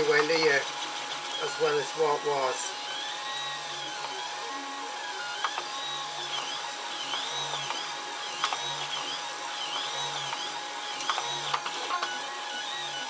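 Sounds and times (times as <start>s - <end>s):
stepper motors whining: 0.0s - 13.0s
sharp clicks: 8.4s - 9.1s.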